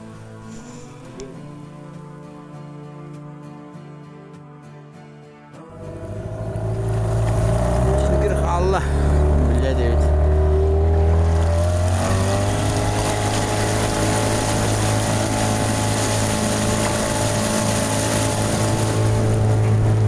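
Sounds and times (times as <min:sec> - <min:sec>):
boat motor running: 0:05.7 - 0:20.0.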